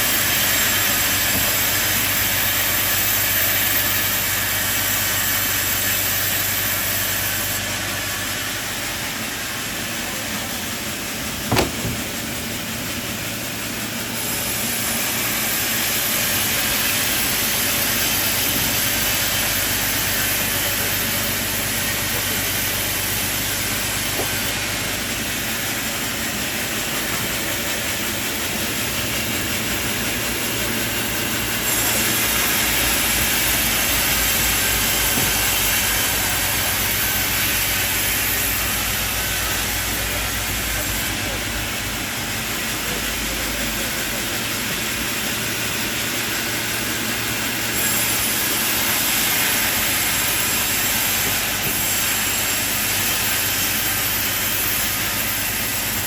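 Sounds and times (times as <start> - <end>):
sawmill machinery whirring: 0.0 - 56.0
sharp knock: 11.5 - 12.2.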